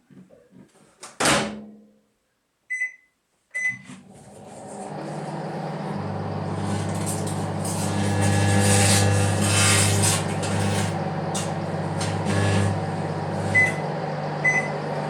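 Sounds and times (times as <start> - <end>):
keypad beeps: 2.7 - 3.8
microwave oven humming: 4.0 - 15.0.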